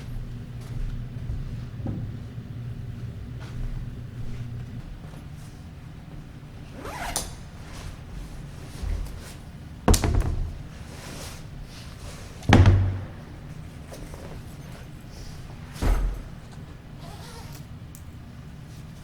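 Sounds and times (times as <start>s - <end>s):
ball thudding: 12.5s - 13.5s.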